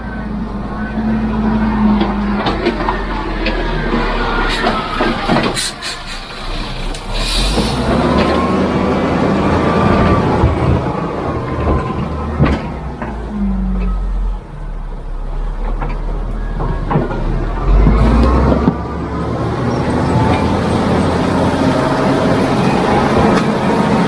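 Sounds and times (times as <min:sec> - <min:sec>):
construction machinery engine rumble: 0:00.0 - 0:24.0
knocks and clanks: 0:01.0 - 0:05.8, 0:10.2 - 0:14.0, 0:15.6 - 0:18.8.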